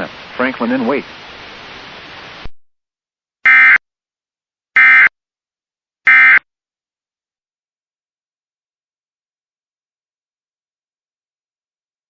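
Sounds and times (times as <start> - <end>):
faint radio hiss: 0.0 - 2.5.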